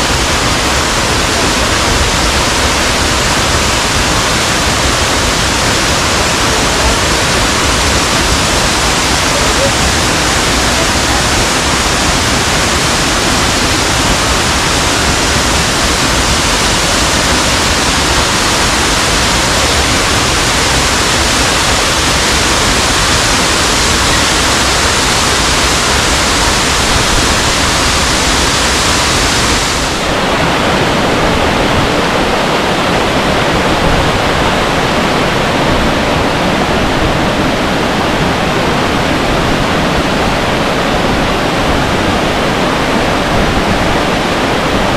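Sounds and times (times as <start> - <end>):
waterfall rushing: 0.0 - 44.9.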